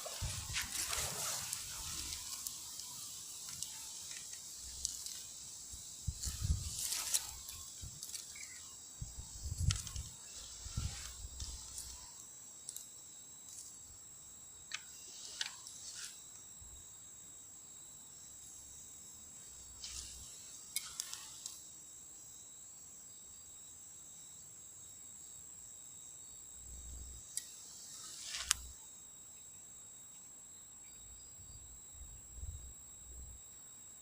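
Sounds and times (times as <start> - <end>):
high-pitched insect trill: 0.0 - 34.0.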